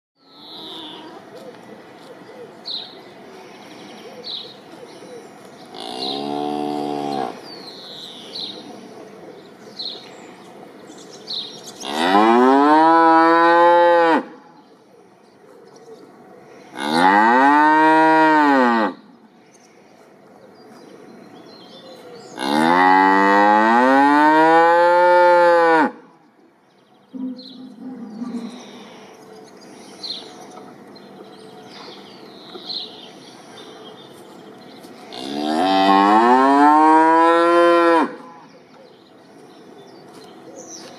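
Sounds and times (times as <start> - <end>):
cow mooing: 5.8 - 7.4, 11.8 - 14.3.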